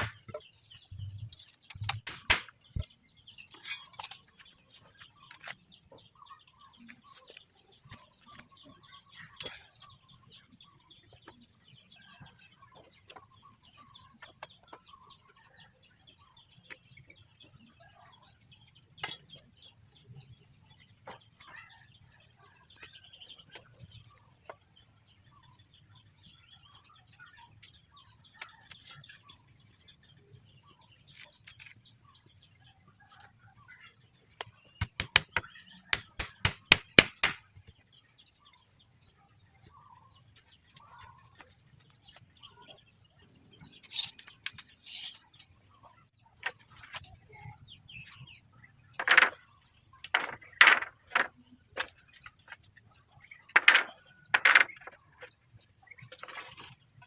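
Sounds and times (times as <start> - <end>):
sharp knocks and taps: 34.4 - 37.7.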